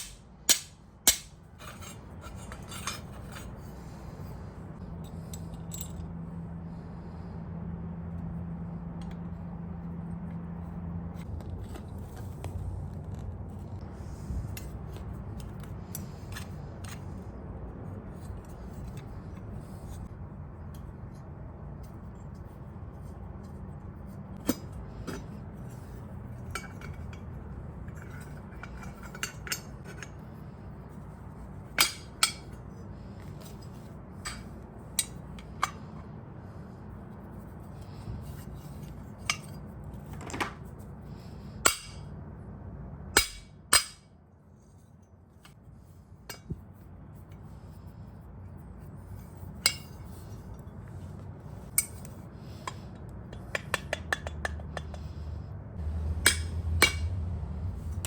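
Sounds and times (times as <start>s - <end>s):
steady low hum: 0.0s - 58.0s
metal tools clinking: 1.6s - 3.6s, 5.0s - 6.1s.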